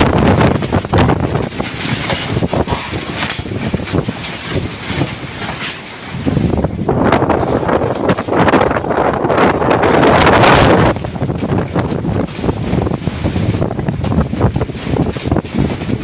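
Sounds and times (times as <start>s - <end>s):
strong wind buffeting microphone: 0.0s - 16.0s
knocks and rattles: 0.4s - 6.7s.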